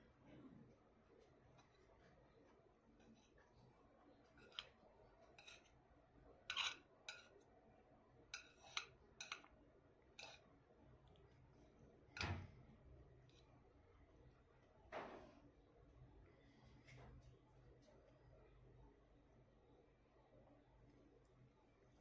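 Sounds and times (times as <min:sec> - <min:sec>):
cutlery and dishes clinking: 0:04.3 - 0:05.7, 0:06.4 - 0:07.4, 0:08.3 - 0:09.5, 0:10.2 - 0:10.4.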